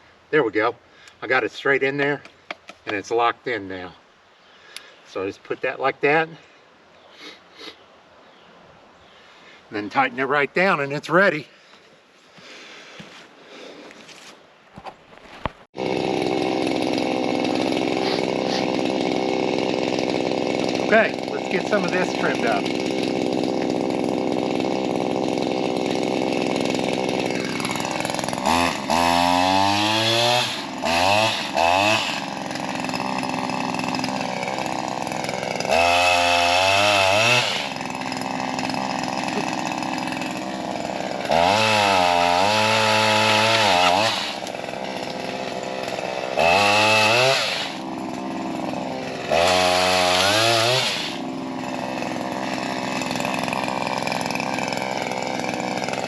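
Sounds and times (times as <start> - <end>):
pole saw cutting tree limbs: 15.2 - 56.0
two-stroke engine idling and revving: 15.8 - 56.0.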